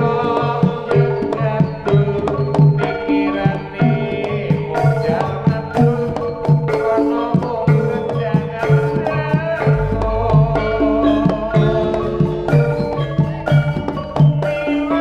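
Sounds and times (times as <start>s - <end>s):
hand drums beating: 0.0s - 15.0s
metallophones playing notes: 0.0s - 15.0s
deep low tone: 9.7s - 13.9s.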